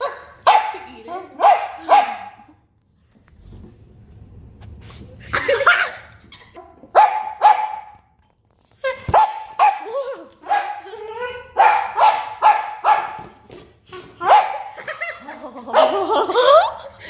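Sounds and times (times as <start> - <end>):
dog barking: 0.0 - 2.4, 6.9 - 8.0, 9.1 - 10.9, 11.6 - 13.3, 14.3 - 14.7.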